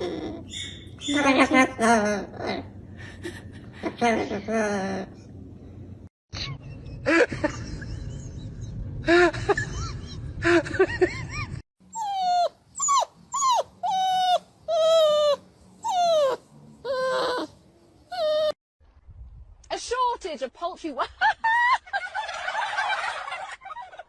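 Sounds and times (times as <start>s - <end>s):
dog whimpering: 0.0s - 1.2s, 11.9s - 18.6s.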